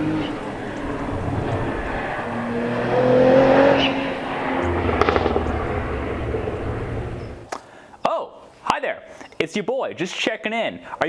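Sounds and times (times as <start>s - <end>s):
car engine revving hard: 0.0s - 7.4s
sharp exhaust crack: 4.0s - 7.5s.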